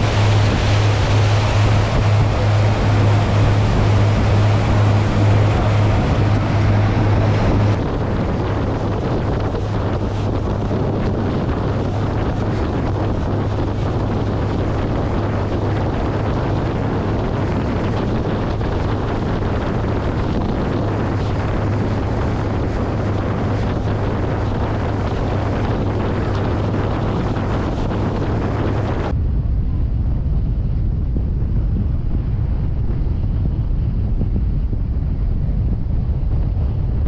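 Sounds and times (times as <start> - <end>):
boat engine hum: 0.0 - 29.2
wind buffeting microphone: 0.0 - 37.0.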